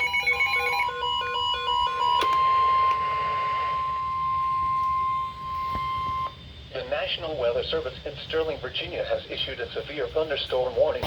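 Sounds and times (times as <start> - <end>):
steady warning alarm tone: 0.0 - 7.6.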